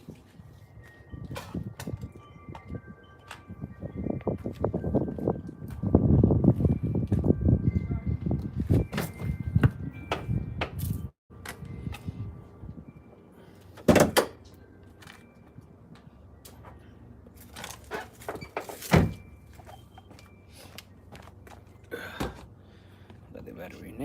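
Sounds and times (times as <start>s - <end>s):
knocks and clunks of car work: 13.8s - 14.4s.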